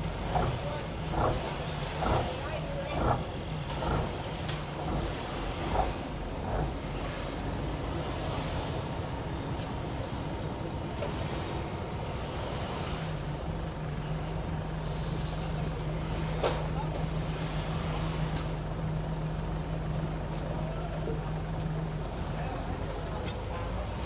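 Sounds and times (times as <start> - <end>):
short high squeaks: 12.8 - 14.2.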